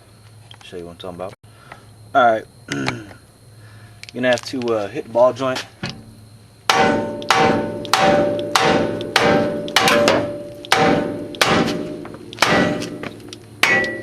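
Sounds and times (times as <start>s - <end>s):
hammer striking steel: 6.7s - 14.0s.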